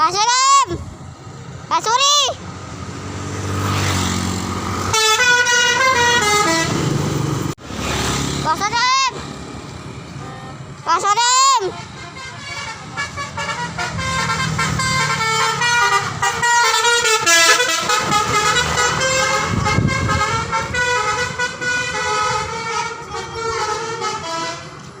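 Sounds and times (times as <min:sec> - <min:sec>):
musical vehicle horn playing a tune: 0:04.9 - 0:07.0, 0:10.2 - 0:10.7, 0:11.6 - 0:24.9.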